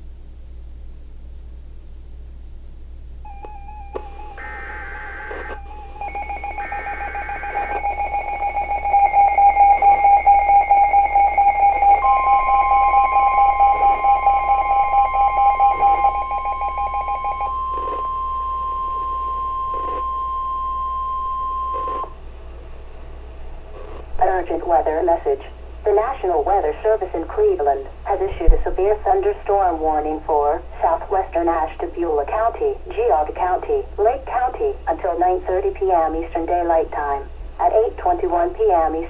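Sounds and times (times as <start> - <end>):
pulsing alarm tone: 3.2 - 22.2
screeching data bursts: 3.2 - 22.2
steady attention tone: 3.2 - 22.3.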